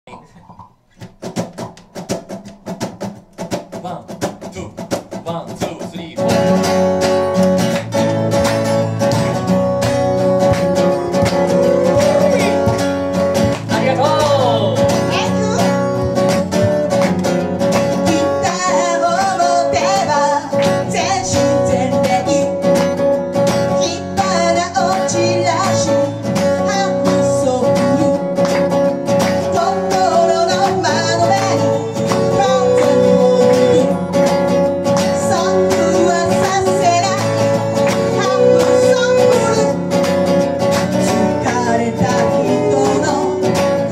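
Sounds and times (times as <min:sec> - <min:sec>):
strummed guitar: 0:00.1 - 0:43.9
person singing: 0:09.2 - 0:16.3, 0:17.9 - 0:22.9, 0:23.7 - 0:28.6, 0:29.4 - 0:34.3, 0:35.0 - 0:40.0, 0:40.9 - 0:43.9.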